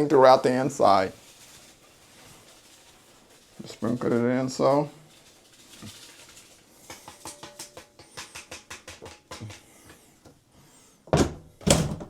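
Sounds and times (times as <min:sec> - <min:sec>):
powder ticking into drum: 0:06.8 - 0:09.6.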